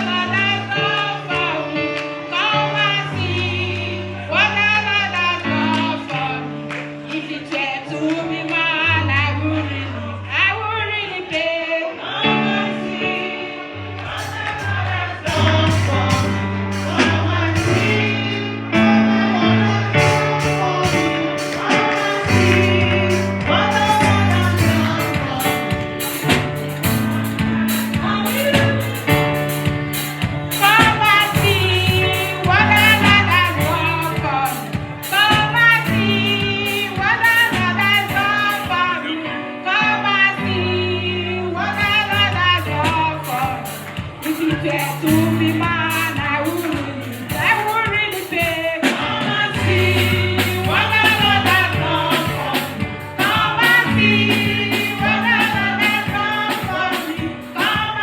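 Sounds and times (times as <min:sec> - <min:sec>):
gospel singing with band: 0:00.0 - 0:58.0
bass line: 0:14.0 - 0:38.9, 0:40.6 - 0:48.1, 0:49.3 - 0:56.9
cymbals: 0:14.1 - 0:18.9, 0:19.9 - 0:39.0, 0:41.8 - 0:58.0.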